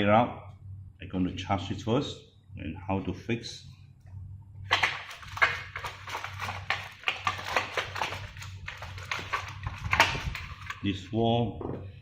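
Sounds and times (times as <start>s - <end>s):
plastic packaging handled: 4.7s - 10.9s.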